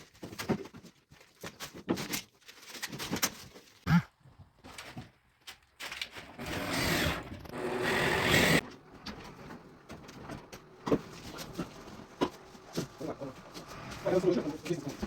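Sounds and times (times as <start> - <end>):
handheld power tool running: 6.4 - 8.7.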